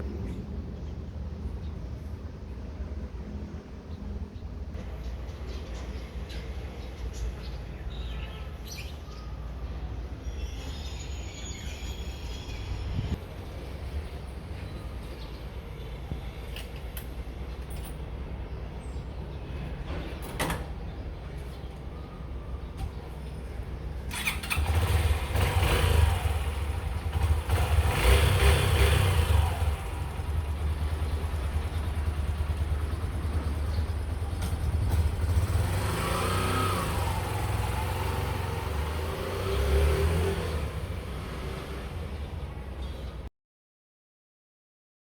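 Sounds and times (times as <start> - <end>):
motorcycle engine revving: 24.1 - 42.5.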